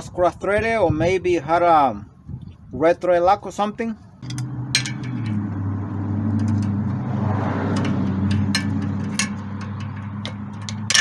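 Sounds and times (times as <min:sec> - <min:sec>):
power tool grinding stripped threads: 0:04.2 - 0:11.0.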